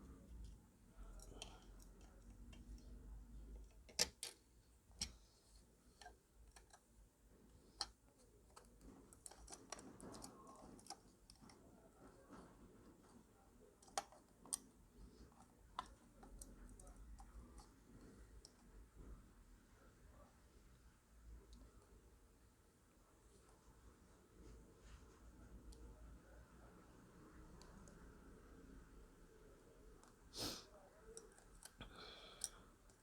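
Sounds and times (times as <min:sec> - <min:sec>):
faint handling noise: 0:00.0 - 0:28.6
small clicks and taps: 0:00.3 - 0:06.9, 0:07.6 - 0:13.2, 0:13.8 - 0:19.2.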